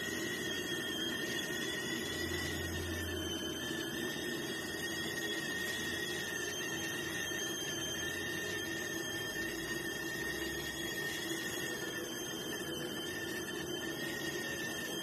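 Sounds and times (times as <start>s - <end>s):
kettle whistling: 0.0s - 15.0s.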